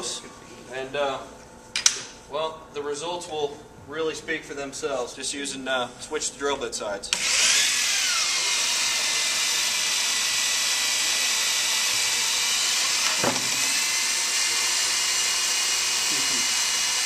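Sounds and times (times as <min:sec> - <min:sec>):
electric drills whining: 0:07.1 - 0:17.0.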